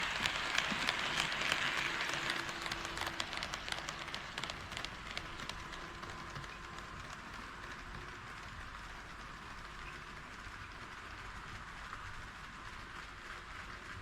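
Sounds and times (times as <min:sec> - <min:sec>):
model train wheels clicking: 0:00.0 - 0:14.0.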